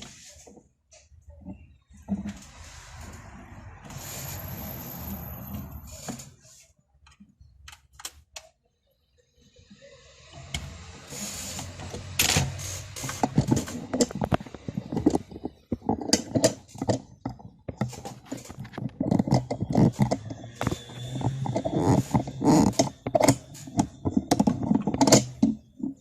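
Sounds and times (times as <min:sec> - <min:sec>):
small hard objects clattering: 0:12.6 - 0:26.0.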